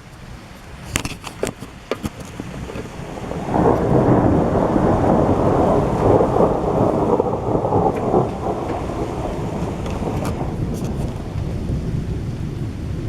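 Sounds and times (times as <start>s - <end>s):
rolling rumble of thunder: 2.0s - 13.0s.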